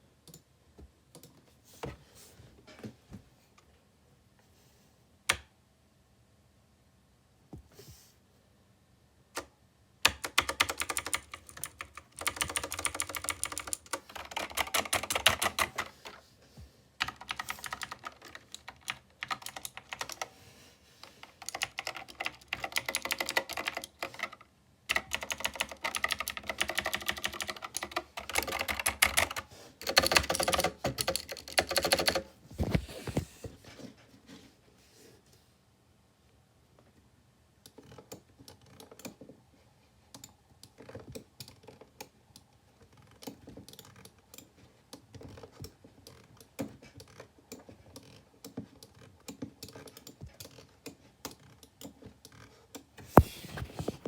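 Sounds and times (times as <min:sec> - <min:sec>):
rapid typing on a keyboard: 0:10.0 - 0:16.2, 0:17.0 - 0:20.3, 0:21.0 - 0:32.3, 0:45.1 - 0:52.9.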